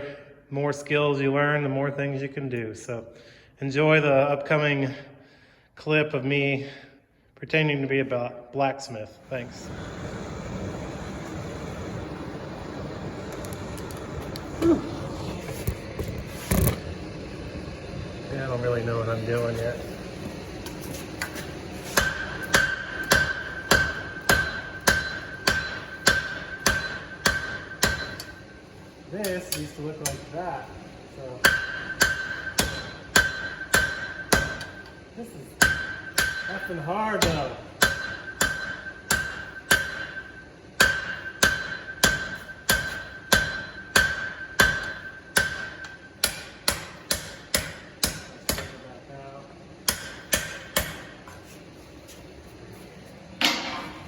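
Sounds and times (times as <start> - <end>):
hammer striking hot steel on anvil: 20.6 - 28.6, 29.2 - 30.4, 31.3 - 35.0, 35.6 - 48.9, 49.8 - 51.4, 53.4 - 54.0
anvil ringing: 22.0 - 28.6, 31.4 - 35.0, 35.6 - 48.8.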